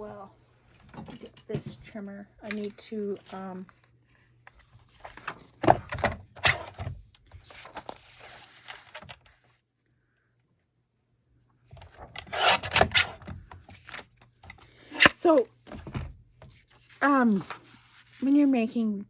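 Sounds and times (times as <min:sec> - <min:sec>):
paper trimmer blade scraping: 0:12.2 - 0:13.2.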